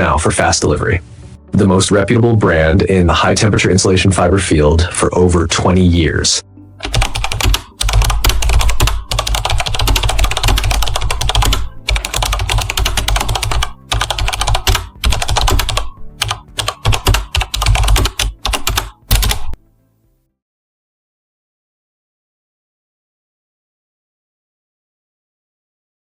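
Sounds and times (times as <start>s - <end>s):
rapid clicking: 6.8s - 19.6s.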